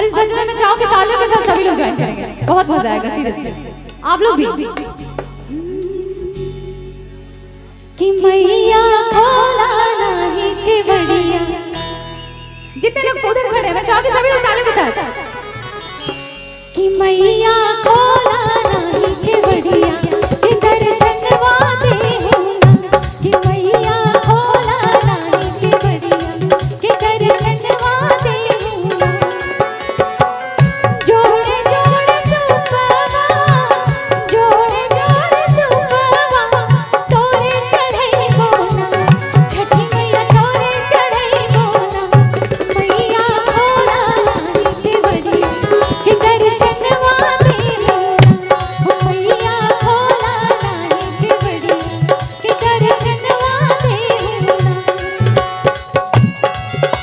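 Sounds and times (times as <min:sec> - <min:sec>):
tabla rhythm: 0:00.0 - 0:07.0, 0:13.0 - 0:57.0
person singing devotional song: 0:16.8 - 0:56.9
hand drumming: 0:17.9 - 0:57.0.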